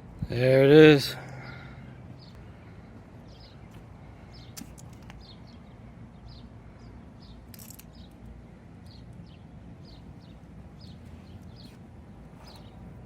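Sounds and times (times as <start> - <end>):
small bird chirping: 3.2 - 13.0.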